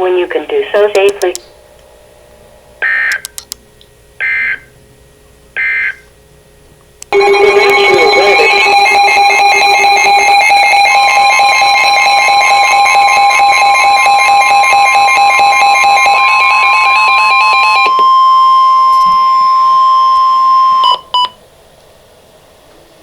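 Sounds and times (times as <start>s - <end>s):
electronic alert tones: 7.1s - 18.1s.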